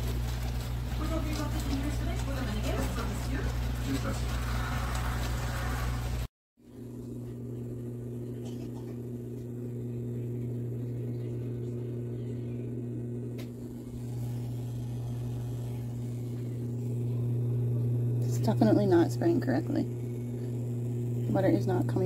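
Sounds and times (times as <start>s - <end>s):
dishwasher motor hum: 0.0s - 22.0s.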